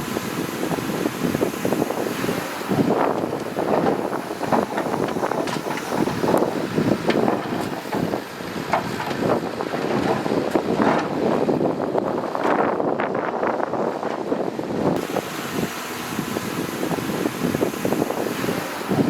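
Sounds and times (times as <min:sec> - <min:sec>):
bulldozer engine rumble: 0:00.0 - 0:19.0
wind buffeting microphone: 0:00.0 - 0:19.0
clanks and rattles: 0:03.1 - 0:11.2.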